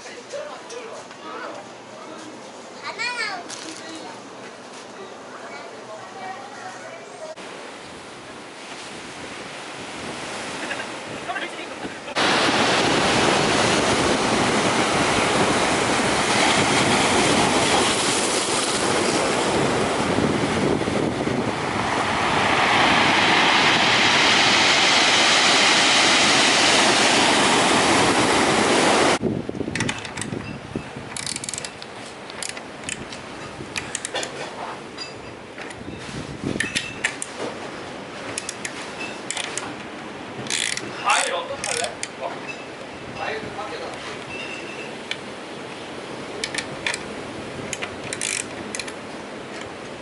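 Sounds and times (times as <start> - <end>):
loud rushing noise: 12.1 - 29.2.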